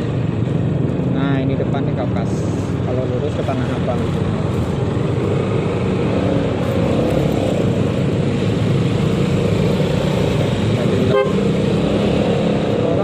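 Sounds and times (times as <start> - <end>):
road noise: 0.0 - 13.0.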